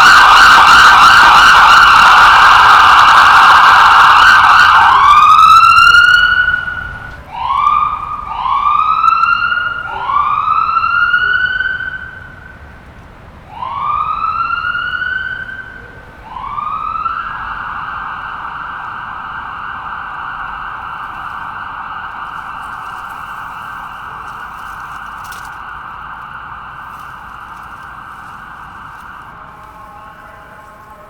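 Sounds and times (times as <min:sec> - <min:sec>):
ambulance siren wailing: 0:00.0 - 0:31.0.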